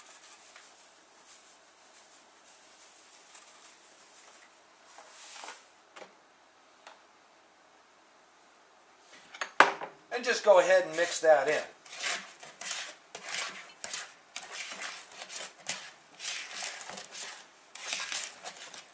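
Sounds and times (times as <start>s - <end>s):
soft rustling: 0.0s - 5.8s.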